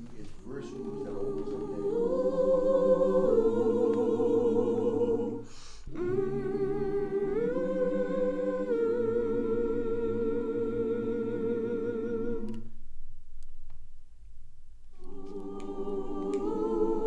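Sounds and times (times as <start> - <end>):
choir singing sustained chord: 0.1 - 12.7, 15.0 - 17.0.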